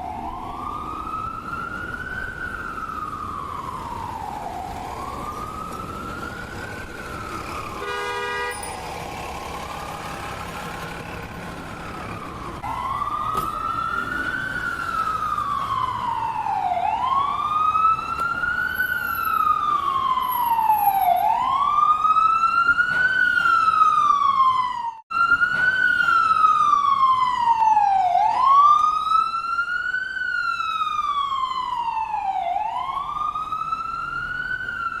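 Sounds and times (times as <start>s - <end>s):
ambulance siren wailing: 0.0s - 35.0s
short horn blast: 7.8s - 8.8s.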